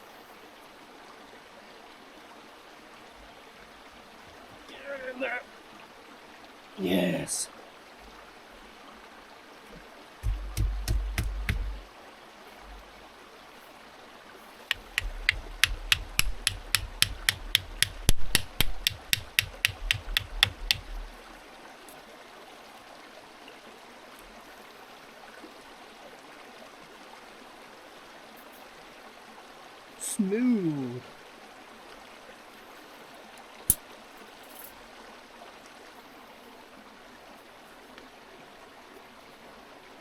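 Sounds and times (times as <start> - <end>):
stream flowing: 0.0 - 40.0
dull thuds: 10.2 - 11.8, 12.6 - 12.9, 14.7 - 21.2
rapid sharp knocks: 10.2 - 11.8, 12.6 - 12.8, 14.7 - 21.2.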